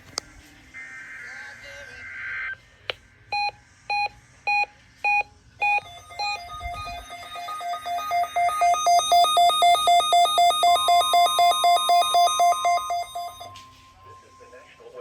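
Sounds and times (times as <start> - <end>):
weather radio alert beeps: 3.4 - 15.0.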